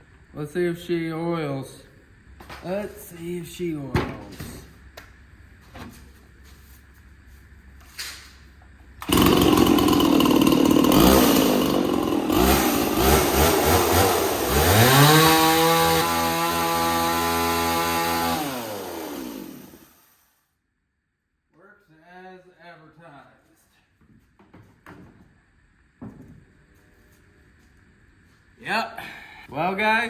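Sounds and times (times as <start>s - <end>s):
chainsaw revving: 9.0s - 20.1s.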